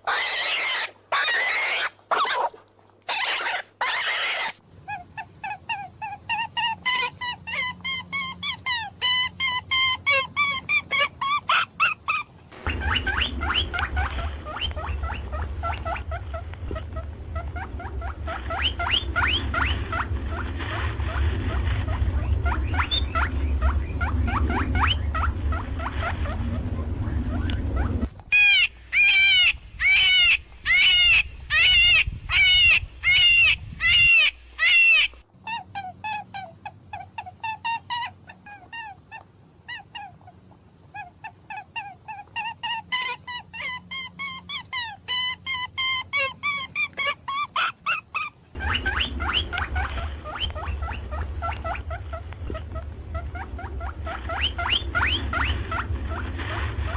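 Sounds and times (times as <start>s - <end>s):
animal calls: 0.0s - 56.9s
rapid chirping: 11.6s - 35.1s
low hum: 12.4s - 35.8s, 48.6s - 56.9s.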